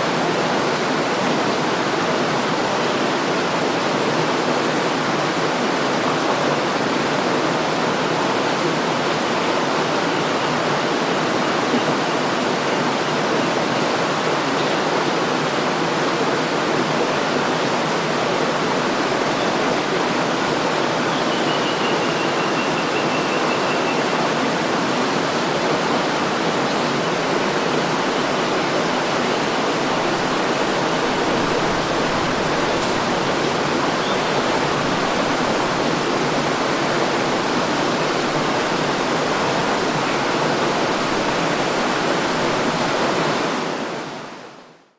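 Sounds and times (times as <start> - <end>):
river water rushing: 0.0 - 44.8
faint high whistle: 21.1 - 24.2.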